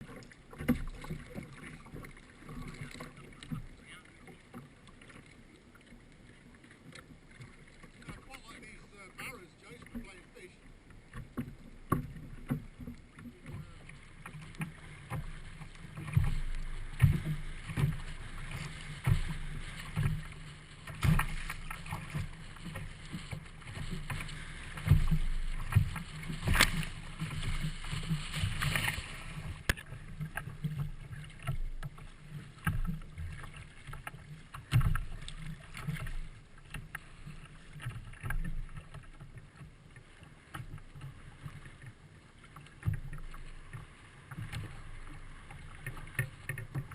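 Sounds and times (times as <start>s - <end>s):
water around kayak: 0.0s - 46.9s.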